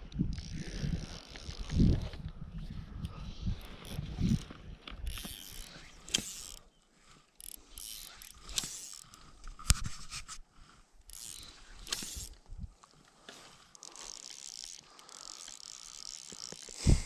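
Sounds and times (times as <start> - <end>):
fishing reel drag ratcheting: 0.2 - 2.2, 3.0 - 10.4, 11.0 - 16.9
sharp clicks: 11.0 - 12.4.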